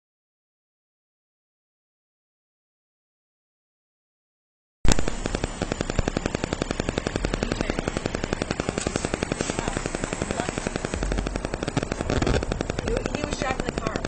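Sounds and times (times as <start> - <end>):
rapid clatter of clicks: 4.9 - 14.0.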